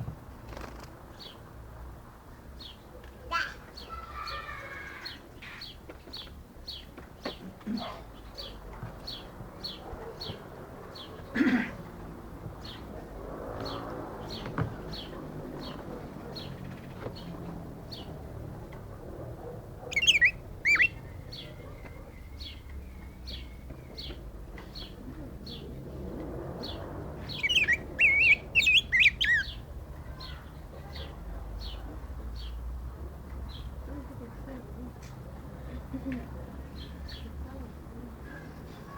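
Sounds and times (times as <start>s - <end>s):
bird singing warbled phrases: 19.9s - 24.2s, 26.6s - 30.5s.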